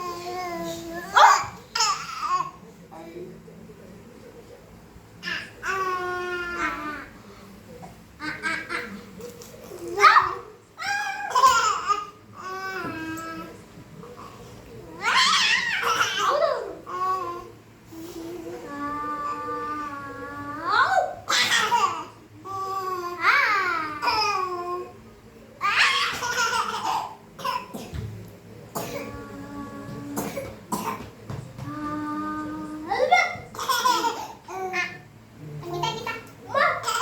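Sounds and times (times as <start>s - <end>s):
small child coughing: 28.8s - 29.2s, 30.2s - 31.1s.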